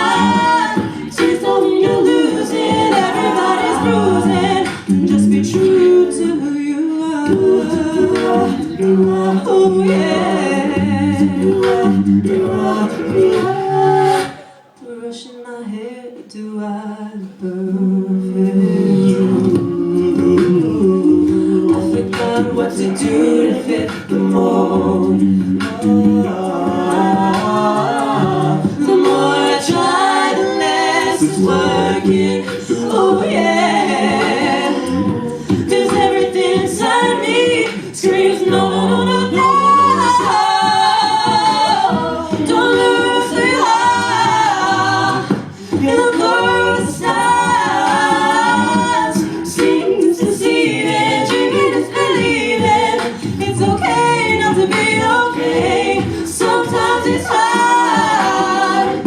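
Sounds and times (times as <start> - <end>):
a cappella group singing: 0.0 - 59.0
vocal percussion clicking: 18.2 - 59.0.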